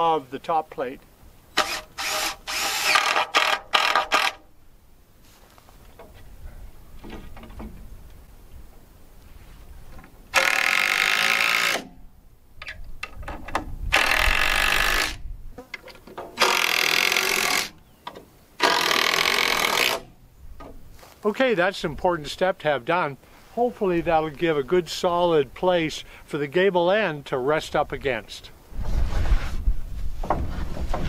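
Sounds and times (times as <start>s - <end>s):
power drill driving screws: 1.6s - 4.4s, 10.3s - 11.9s, 13.9s - 15.2s, 16.4s - 17.8s, 18.6s - 20.1s.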